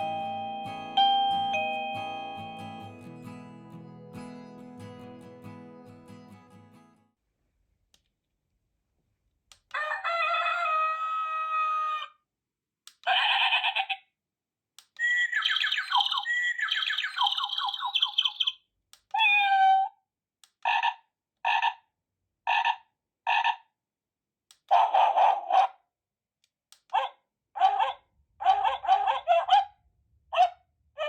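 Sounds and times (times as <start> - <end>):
doorbell chime ringtones: 0.0 - 3.1.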